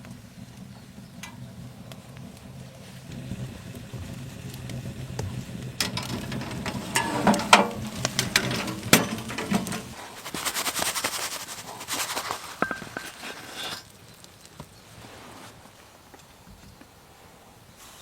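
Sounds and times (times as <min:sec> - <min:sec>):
dense crackle: 0:00.0 - 0:16.8
pan and utensils knocking: 0:05.8 - 0:10.0
pan scraping: 0:05.8 - 0:14.3.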